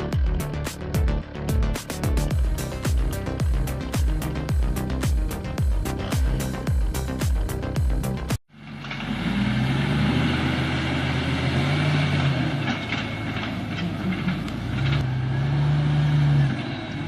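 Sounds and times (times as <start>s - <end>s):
music: 0.0s - 8.4s
truck diesel engine revving: 0.0s - 17.0s.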